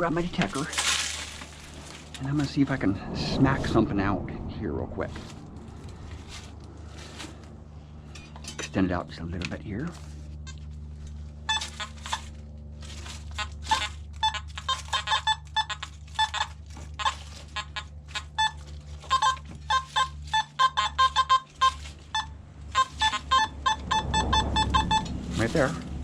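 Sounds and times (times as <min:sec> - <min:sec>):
steady low hum: 0:00.0 - 0:26.0
metal detector beeps: 0:11.4 - 0:12.3, 0:13.0 - 0:25.8.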